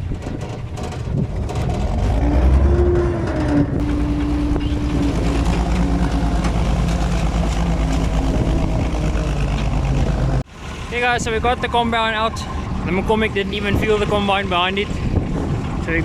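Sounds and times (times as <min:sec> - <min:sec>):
tractor engine under load: 0:00.0 - 0:10.4.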